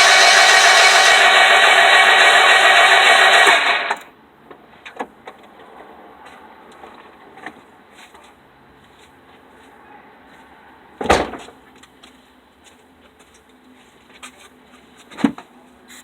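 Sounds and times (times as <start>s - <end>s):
car starter cranking engine: 0.0s - 4.1s.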